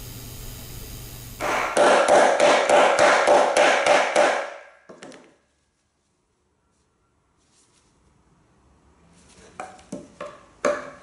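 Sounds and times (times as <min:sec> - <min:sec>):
rapid sharp knocks: 0:01.4 - 0:04.7.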